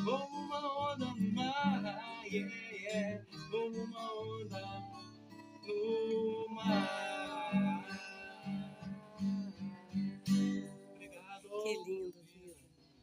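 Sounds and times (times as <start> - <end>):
guitar playing: 0.0 - 12.0.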